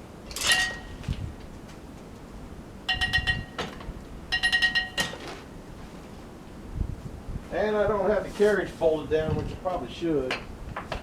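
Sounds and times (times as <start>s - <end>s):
metal clanking and ringing: 0.3s - 1.0s, 2.9s - 5.4s.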